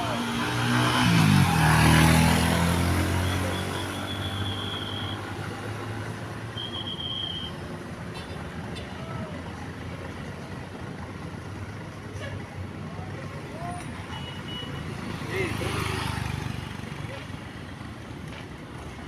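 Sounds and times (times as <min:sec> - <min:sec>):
vehicle passing: 0:00.0 - 0:05.8
traffic hum: 0:00.0 - 0:19.0.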